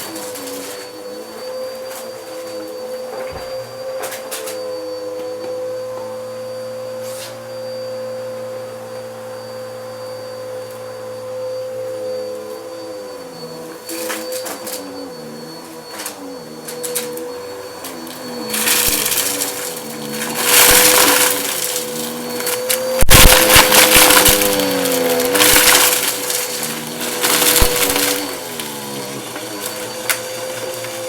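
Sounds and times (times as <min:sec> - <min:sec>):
vacuum cleaner motor whine: 0:00.0 - 0:31.0
debris crunching in vacuum: 0:15.9 - 0:31.0.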